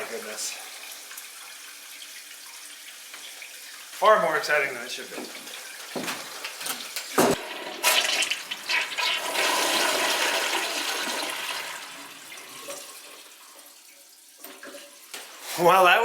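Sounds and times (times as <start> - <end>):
toilet flush water rushing: 7.3 - 13.9.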